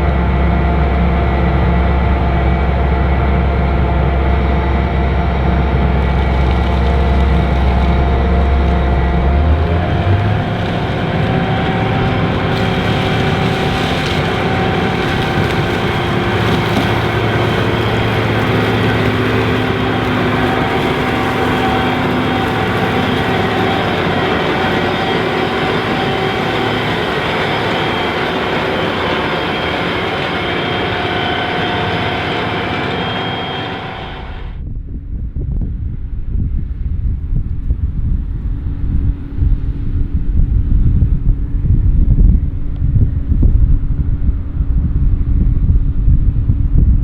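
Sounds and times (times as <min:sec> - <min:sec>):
combine harvester drone: 0:00.0 - 0:34.7, 0:36.7 - 0:47.0
steady whining tones: 0:00.0 - 0:34.7.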